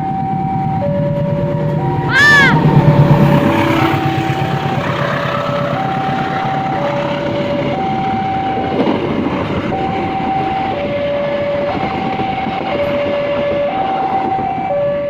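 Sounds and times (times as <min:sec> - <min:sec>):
level crossing two-tone alarm: 0:00.0 - 0:03.0, 0:09.6 - 0:15.0
train rumbling past: 0:00.0 - 0:15.0.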